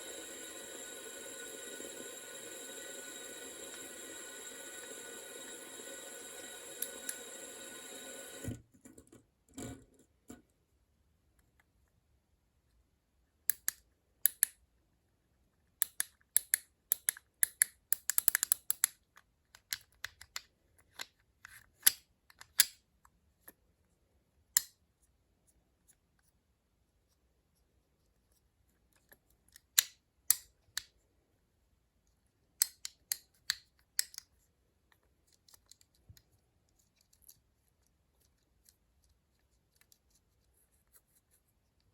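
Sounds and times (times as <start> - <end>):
fidget cube buttons clicking: 15.8 - 20.5.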